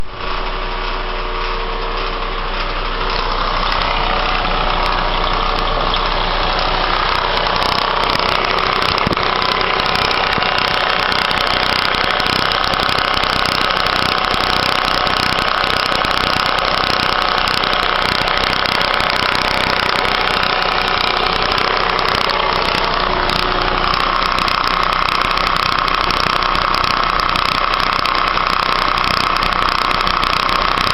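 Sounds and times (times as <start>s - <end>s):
car engine running: 0.0s - 30.9s.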